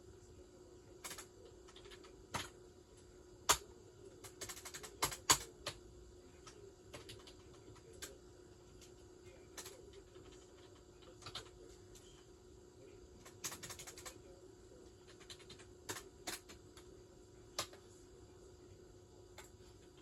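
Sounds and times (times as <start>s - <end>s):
tape hum and hiss: 0.0s - 20.0s.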